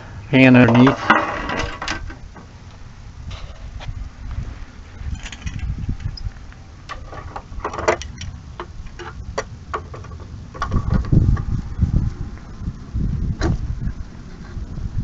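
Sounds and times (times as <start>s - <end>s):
low rumble: 8.3s - 15.0s.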